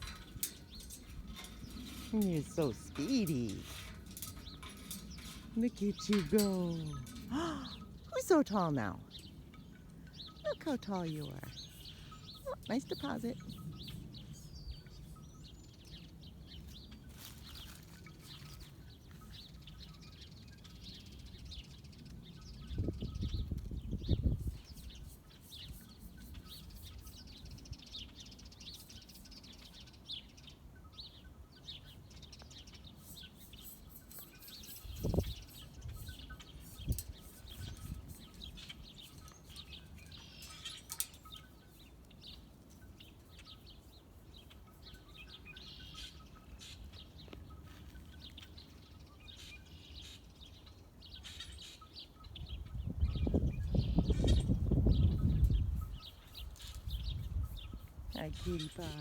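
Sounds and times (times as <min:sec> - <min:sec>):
wind buffeting microphone: 0:00.0 - 0:28.0, 0:34.0 - 0:41.4, 0:52.3 - 0:59.0
small birds chirping: 0:00.0 - 0:59.0.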